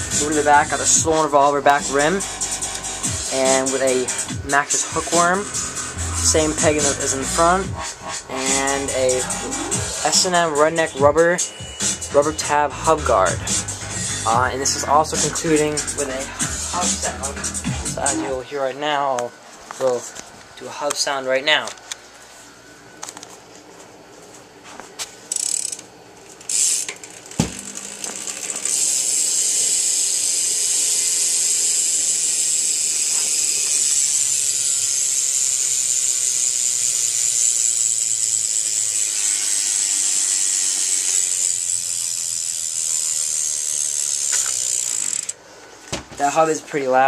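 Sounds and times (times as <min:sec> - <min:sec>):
bike hub freewheel clicking: 0:00.0 - 0:11.0, 0:25.3 - 0:45.4
knock: 0:27.4 - 0:27.6.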